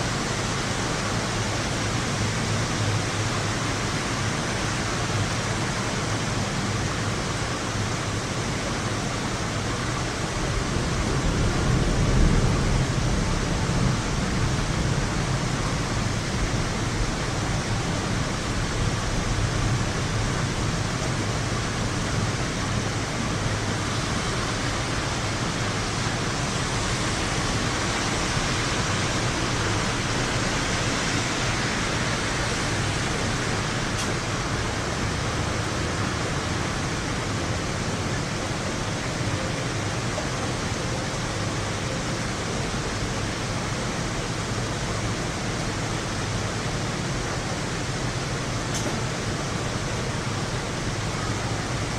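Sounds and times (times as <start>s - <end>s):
heavy rain hissing: 0.0s - 51.9s
low thunder rumble: 10.5s - 17.3s.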